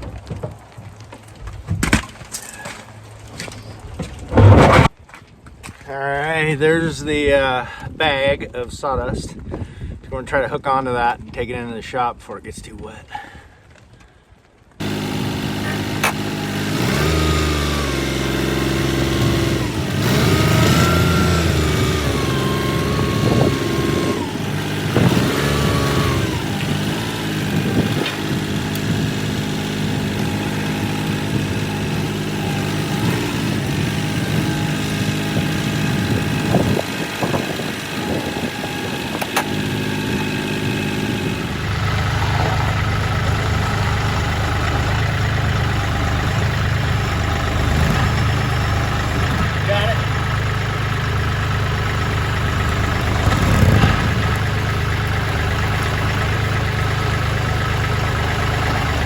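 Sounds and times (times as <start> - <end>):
rising and falling whine: 14.8 - 26.7
tractor diesel engine running: 14.8 - 59.0.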